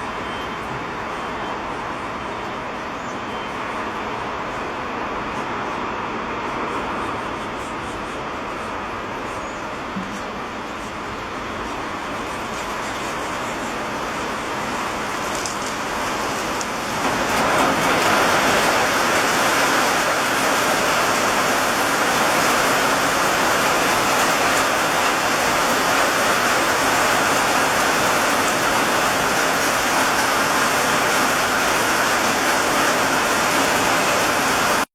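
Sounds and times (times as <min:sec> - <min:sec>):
rain pouring down: 0:09.0 - 0:34.9.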